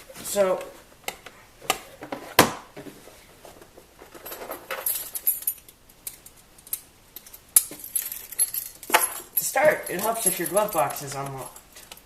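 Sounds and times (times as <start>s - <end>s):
keys jangling: 4.2s - 11.8s.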